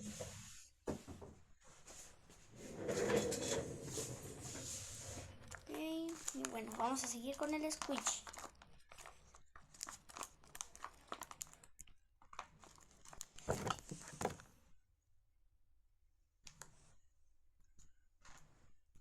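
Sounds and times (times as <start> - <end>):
paper and tape crinkling: 4.6 - 14.4.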